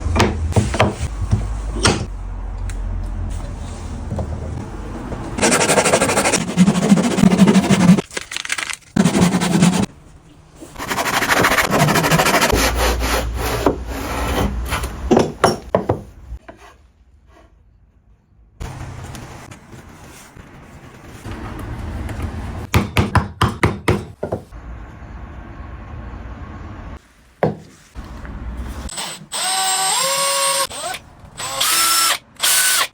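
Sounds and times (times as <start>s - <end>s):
jigsaw scraping wood: 5.4s - 8.0s, 9.0s - 9.9s, 10.8s - 14.8s.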